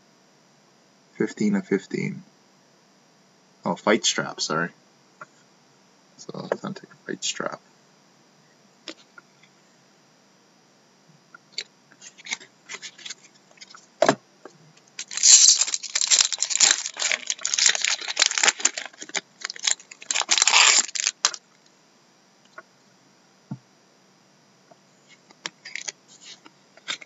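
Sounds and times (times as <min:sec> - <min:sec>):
foil wrapper tearing and crinkling: 0:15.0 - 0:21.4, 0:25.6 - 0:26.0.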